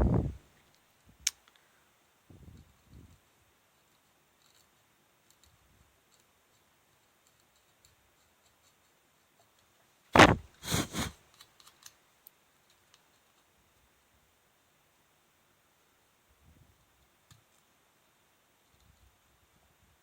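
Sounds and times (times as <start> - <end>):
tool scraping circuit board: 10.2 - 11.1.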